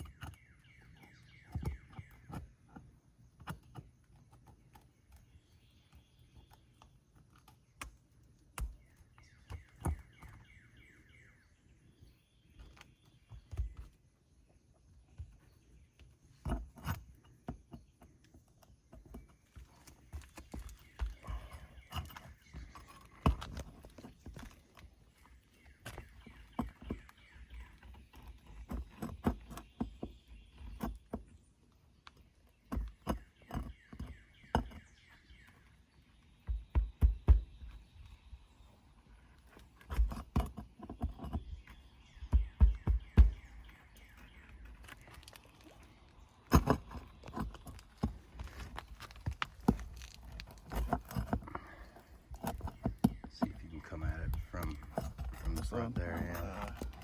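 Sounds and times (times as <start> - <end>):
knocks and taps on roof: 36.5 - 37.8, 42.2 - 43.6.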